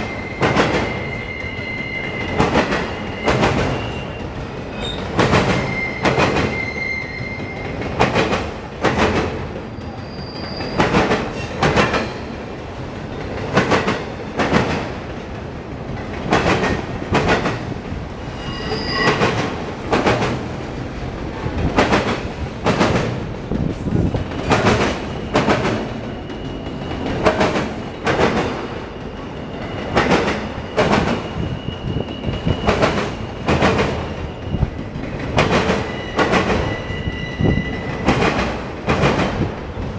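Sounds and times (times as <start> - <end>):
high-pitched wheel squeal: 0.0 - 7.9, 9.8 - 12.2, 18.2 - 19.4, 35.8 - 38.2
freight train wheels clacking: 0.0 - 39.9
train rumble: 0.0 - 39.9.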